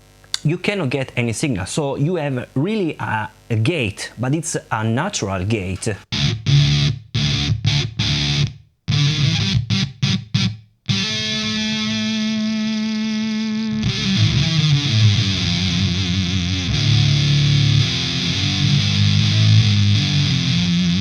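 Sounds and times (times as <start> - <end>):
distorted electric guitar: 6.0 - 21.0
low chugging guitar riff: 6.1 - 21.0.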